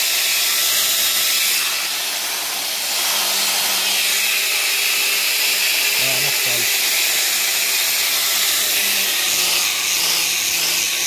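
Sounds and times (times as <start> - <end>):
electric grinder on metal: 0.0 - 11.0.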